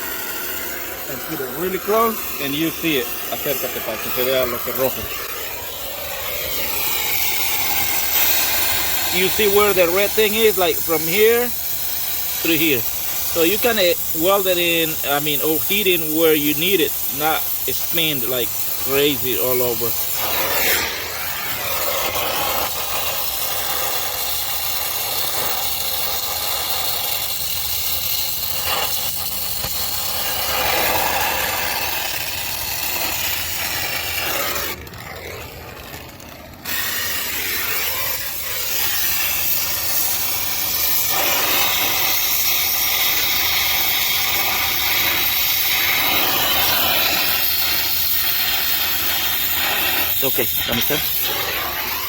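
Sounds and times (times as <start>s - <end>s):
brazing torch flame hissing: 0.0s - 52.0s.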